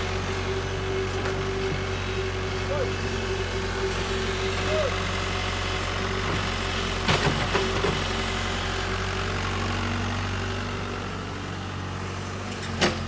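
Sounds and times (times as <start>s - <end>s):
diesel engine idling: 0.0s - 7.1s.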